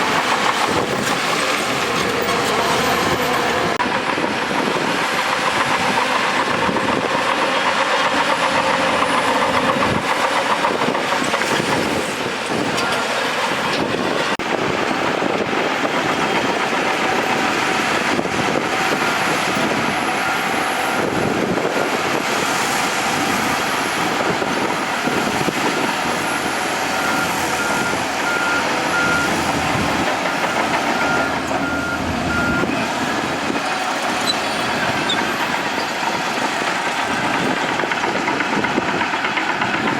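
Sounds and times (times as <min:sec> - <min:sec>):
clanking steel tracks: 0:00.0 - 0:39.9
diesel engine under load: 0:00.0 - 0:39.9
reversing alarm beeping: 0:26.2 - 0:29.5, 0:30.3 - 0:35.3.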